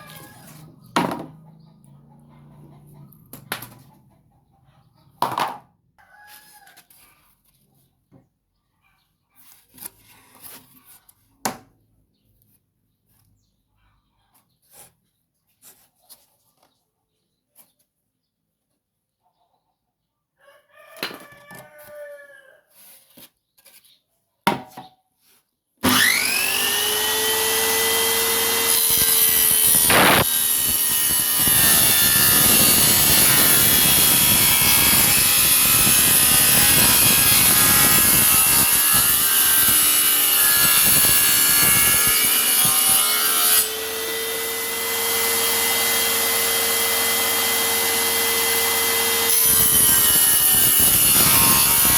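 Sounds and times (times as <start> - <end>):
table saw cutting wood: 25.8 - 51.9.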